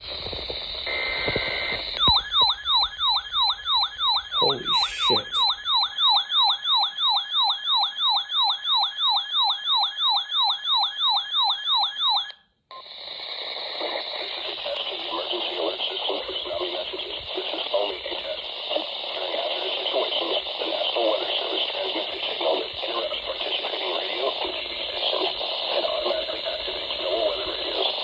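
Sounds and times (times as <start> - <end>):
radio hiss: 0.0 - 2.2, 4.4 - 5.5, 12.9 - 28.0
short electronic beep: 2.0 - 6.2
whooping electronic siren: 2.0 - 12.4.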